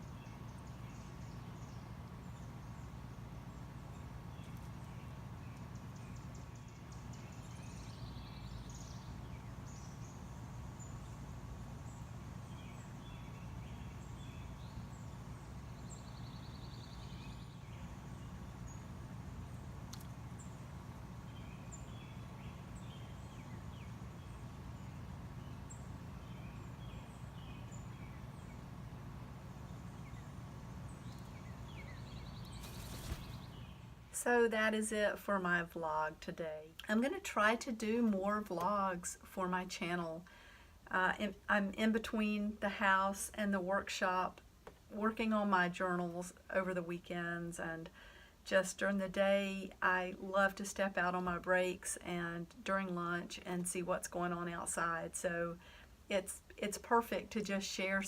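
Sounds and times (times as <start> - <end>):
small birds chirping: 0.0 - 34.2
low background rumble: 0.0 - 40.2.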